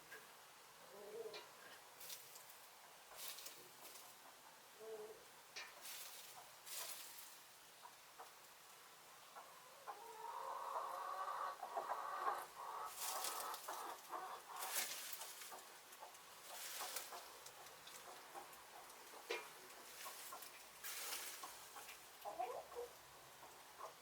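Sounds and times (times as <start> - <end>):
hens clucking: 9.2 - 24.0.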